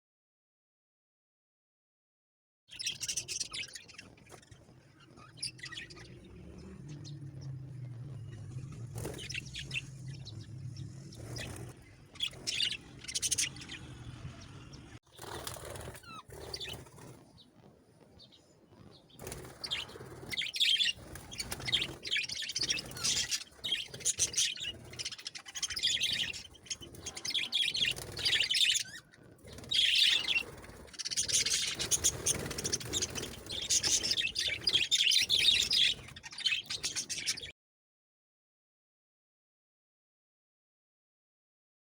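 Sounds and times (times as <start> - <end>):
parrots chirping and calling: 2.8 - 14.7, 19.3 - 37.5.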